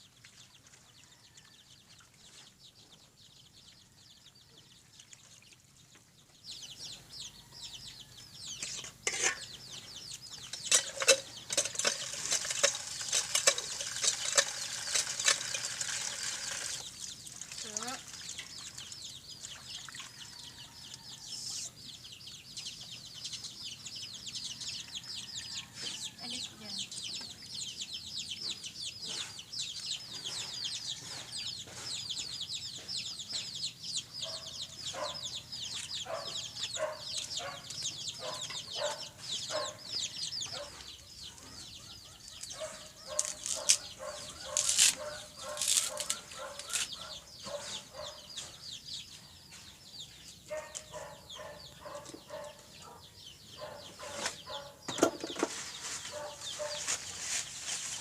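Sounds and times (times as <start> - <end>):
chickens clucking: 6.7 - 21.8, 22.9 - 49.6, 50.3 - 58.0.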